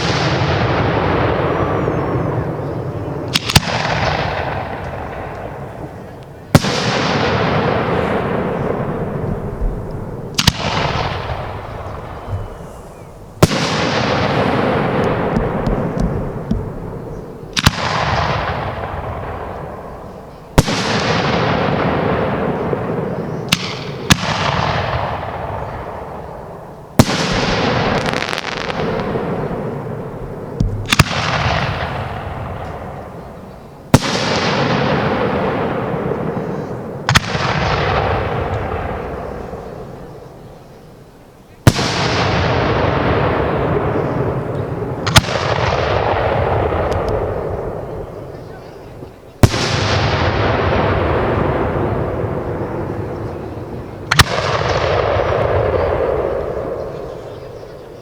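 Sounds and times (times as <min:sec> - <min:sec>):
firework bangs: 0:00.0 - 0:40.2, 0:41.6 - 0:48.4, 0:49.0 - 0:57.3
firework hiss: 0:07.6 - 0:16.5.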